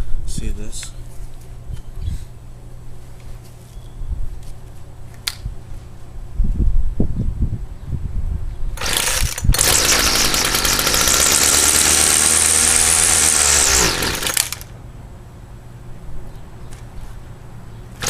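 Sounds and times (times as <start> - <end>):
string trimmer engine running: 8.8 - 14.7.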